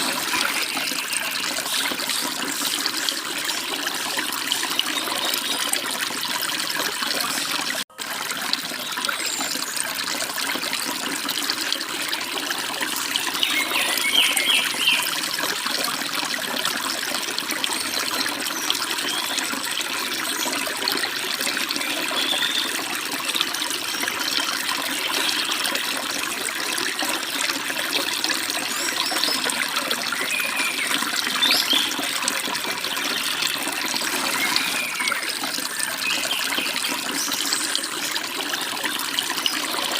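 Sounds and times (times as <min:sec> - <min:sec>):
stream babbling: 0:00.0 - 0:39.9
bird chirps: 0:13.4 - 0:15.0.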